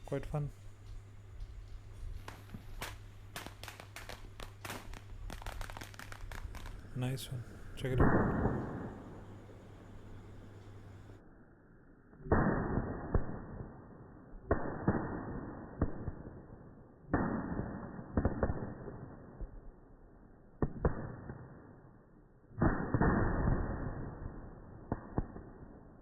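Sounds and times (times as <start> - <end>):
firecrackers banging: 0.0 - 11.2
hiss with small cracks: 0.1 - 7.9.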